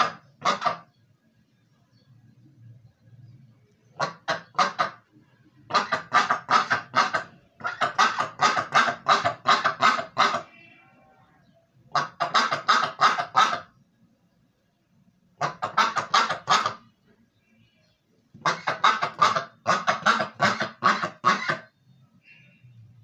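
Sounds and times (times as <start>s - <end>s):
duck quacking: 0.0s - 0.9s, 4.0s - 5.1s, 5.7s - 10.7s, 11.9s - 13.8s, 15.4s - 16.9s, 18.4s - 21.8s.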